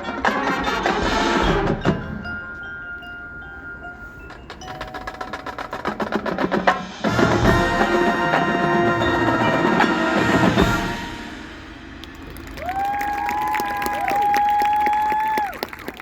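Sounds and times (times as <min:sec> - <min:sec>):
marching band drums: 0:00.0 - 0:02.2, 0:04.8 - 0:12.8.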